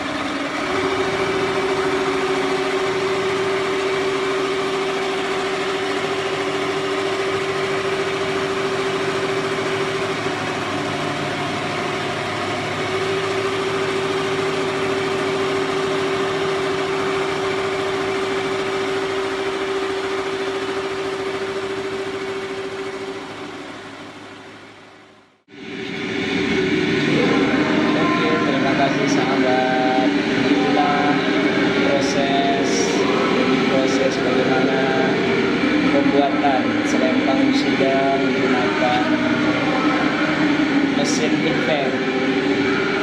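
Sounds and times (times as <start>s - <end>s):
embroidery machine stitching: 0.0s - 24.4s.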